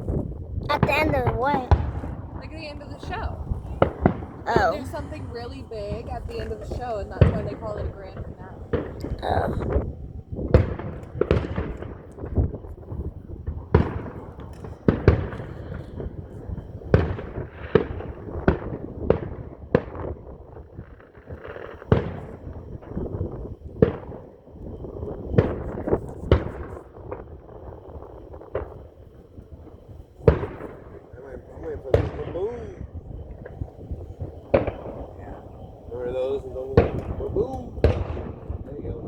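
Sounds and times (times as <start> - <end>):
fireworks bangs with rumbling echo: 0.0 - 39.0.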